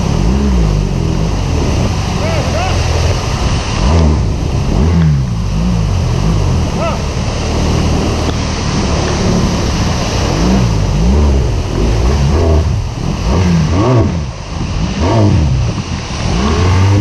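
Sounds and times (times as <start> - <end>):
motorcycle engine revving: 0.0 - 17.0
wind noise: 0.0 - 17.0.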